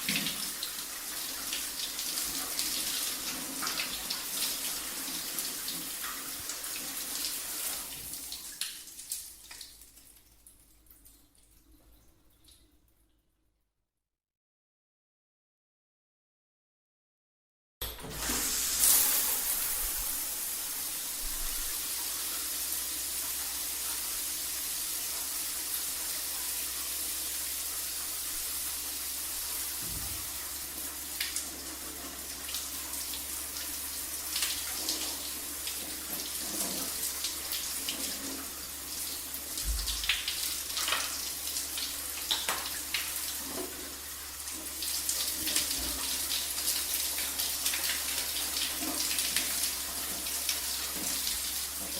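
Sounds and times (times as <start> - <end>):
shower water spray hissing: 18.1 - 31.6.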